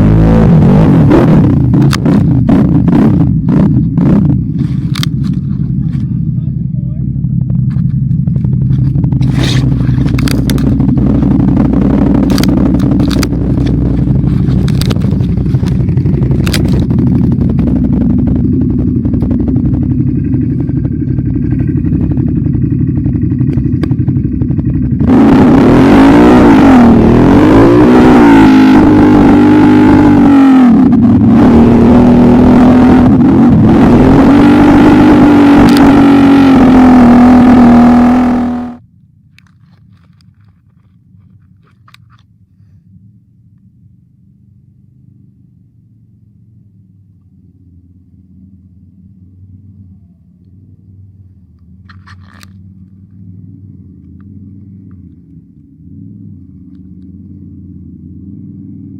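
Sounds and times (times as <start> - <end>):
atv engine revving: 0.0 - 6.4, 7.1 - 38.8
clatter and knocks: 7.5 - 11.4, 12.2 - 18.0.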